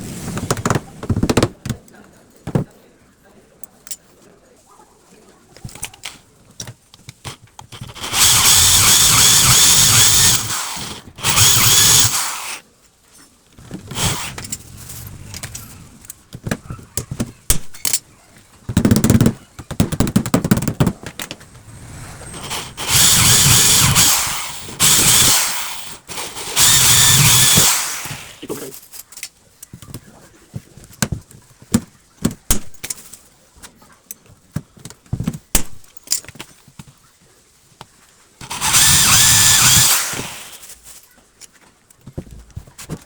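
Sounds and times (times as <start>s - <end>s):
power drill running: 7.8s - 12.6s, 13.9s - 14.4s, 22.4s - 28.4s, 38.4s - 40.7s
handling clicks and knocks: 15.4s - 21.5s.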